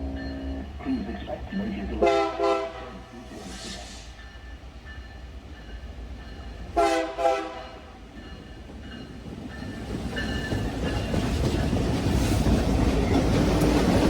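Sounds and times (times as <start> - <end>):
train rumbling: 0.0 - 14.0
locomotive air horn blast: 2.0 - 3.8, 6.8 - 7.6.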